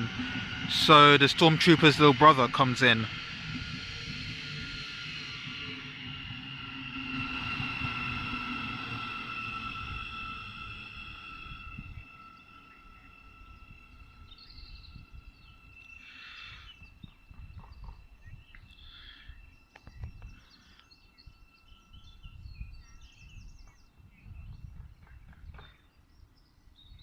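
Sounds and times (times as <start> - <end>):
low rumble: 0.0 - 26.2
songbirds chirping: 9.0 - 27.0.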